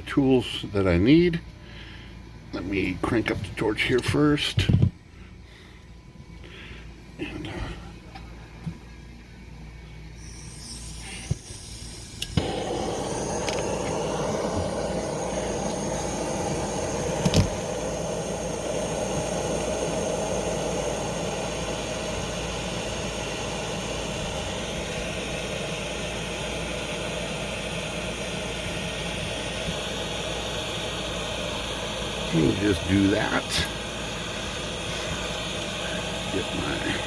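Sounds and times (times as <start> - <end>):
propane torch flame hissing: 10.1 - 37.0.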